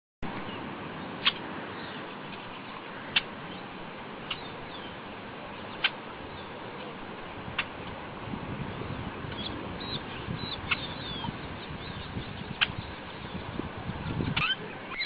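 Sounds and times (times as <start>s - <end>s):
steady background hiss: 0.2s - 15.0s
sharp bird calls: 0.5s - 5.0s, 9.3s - 15.0s.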